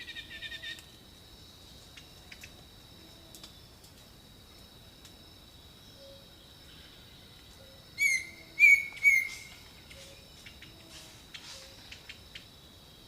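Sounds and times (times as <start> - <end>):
high insect drone: 0.0 - 13.0
faint distant calls: 6.0 - 12.5.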